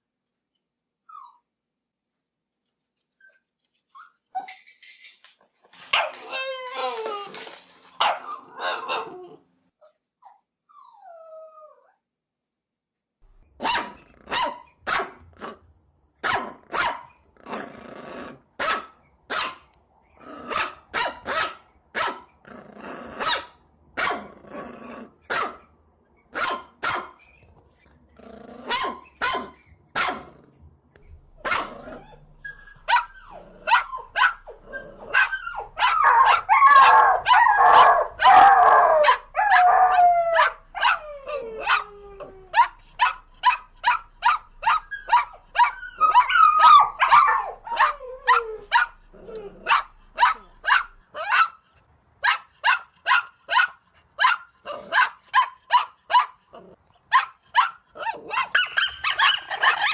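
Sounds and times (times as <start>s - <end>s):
puppies yapping: 5.8s - 9.4s, 31.1s - 51.6s, 57.1s - 59.9s
puppies yelping and whining: 5.8s - 9.4s, 10.2s - 12.0s, 31.1s - 51.4s, 57.6s - 59.9s.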